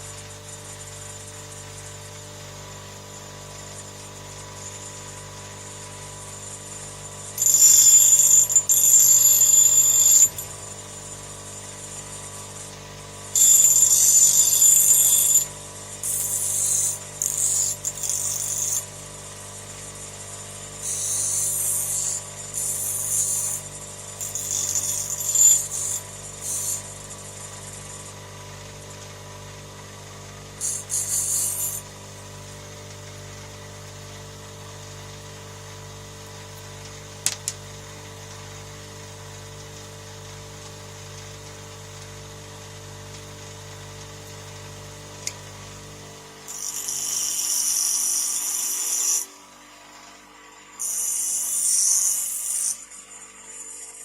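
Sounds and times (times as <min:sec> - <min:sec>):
grinder cutting steel: 0:00.0 - 0:33.0, 0:44.1 - 0:54.0.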